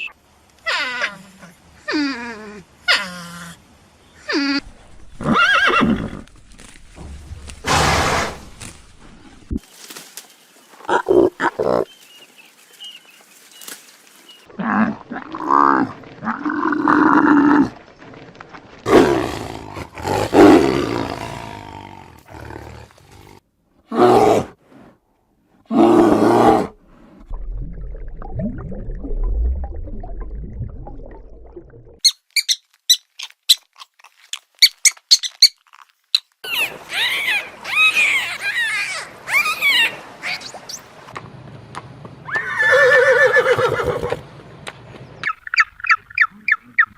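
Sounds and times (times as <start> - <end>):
high squeaks and warbling calls: 32.0 - 40.9.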